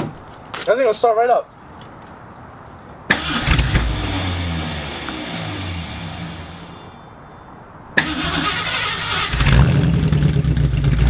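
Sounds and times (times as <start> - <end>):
car engine starting and running: 3.1 - 7.0, 8.0 - 11.0.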